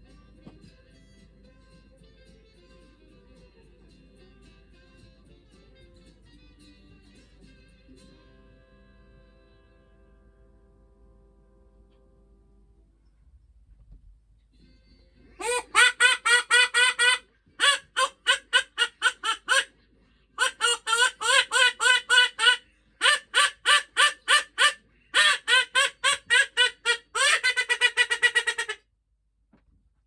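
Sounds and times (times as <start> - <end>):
duck quacking: 15.4 - 19.7, 20.4 - 28.8.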